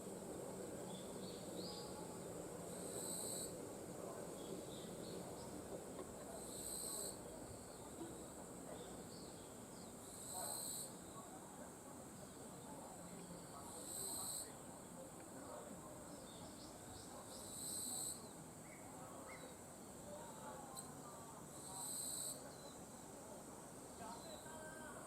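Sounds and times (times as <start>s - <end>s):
buzzy insect call: 0.1s - 5.7s, 6.3s - 11.3s, 13.4s - 14.6s, 17.0s - 20.0s, 20.7s - 25.0s.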